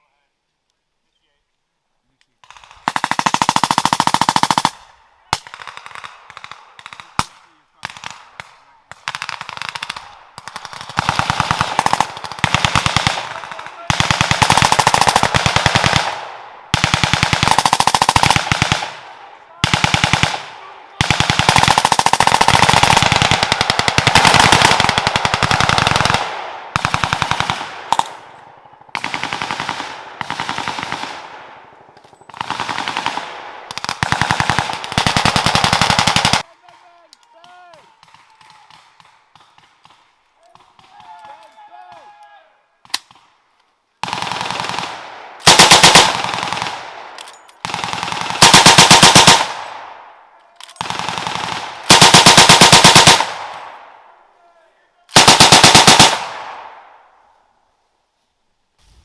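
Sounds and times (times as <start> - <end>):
automatic gunfire: 2.4 - 36.5, 44.0 - 50.0, 50.7 - 53.8, 55.1 - 56.8.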